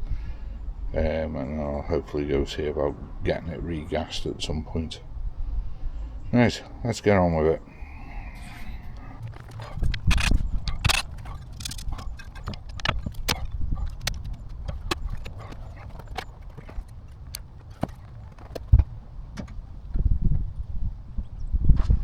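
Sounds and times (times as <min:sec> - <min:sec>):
hand tools tapping metal parts: 0:07.8 - 0:18.8.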